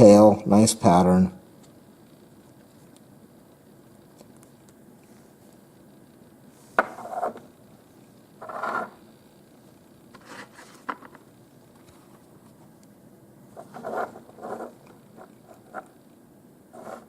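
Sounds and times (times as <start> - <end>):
watch strap scraping: 13.6 - 15.9.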